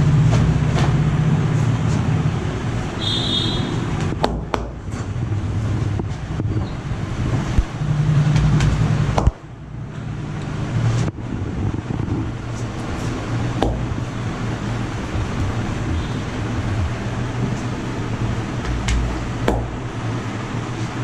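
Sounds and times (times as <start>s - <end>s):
street traffic rumble: 0.0s - 21.0s
sharp knocks: 4.0s - 5.0s, 8.3s - 9.4s, 13.6s - 14.0s, 18.6s - 19.9s.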